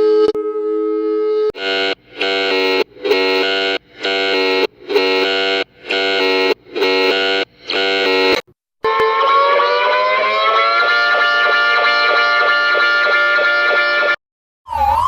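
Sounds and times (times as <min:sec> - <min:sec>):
reversed electronic alert tone pulses: 0:01.6 - 0:08.4.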